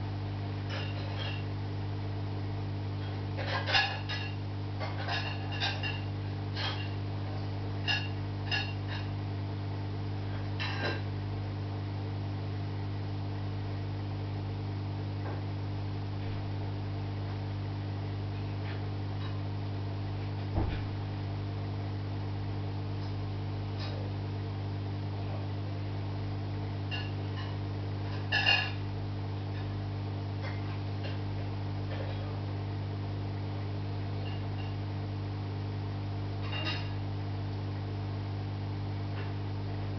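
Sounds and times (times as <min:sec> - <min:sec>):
aquarium equipment humming: 0:00.0 - 0:39.9.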